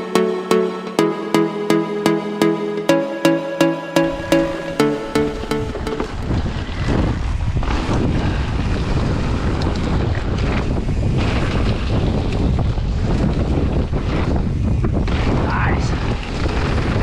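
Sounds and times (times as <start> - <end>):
wind buffeting microphone: 6.1 - 17.0.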